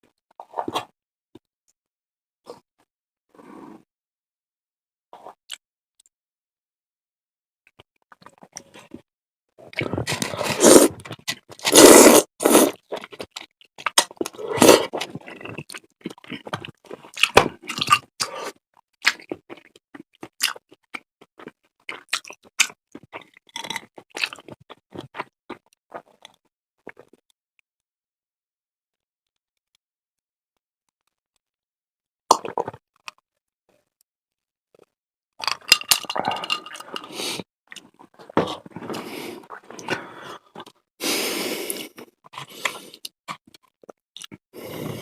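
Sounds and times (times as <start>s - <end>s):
close-miked eating and chewing: 9.6s - 27.2s, 41.7s - 45.0s.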